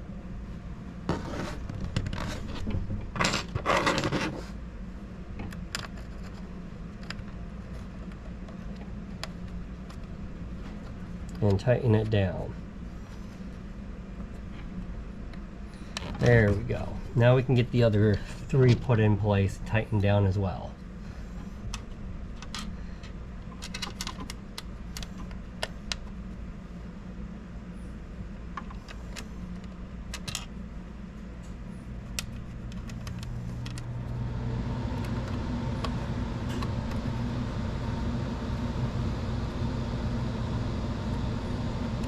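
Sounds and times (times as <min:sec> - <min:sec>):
low hum: 0:25.1 - 0:42.0.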